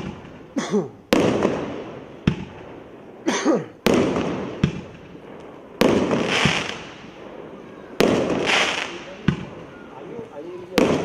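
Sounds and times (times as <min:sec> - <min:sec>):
firework aerial bursts crackling: 0:00.0 - 0:11.0
firework shells launching: 0:03.8 - 0:09.9.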